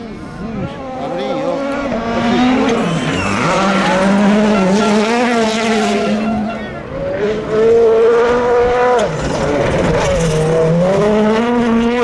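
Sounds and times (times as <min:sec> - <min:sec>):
rally car engine revving: 0:00.1 - 0:12.0.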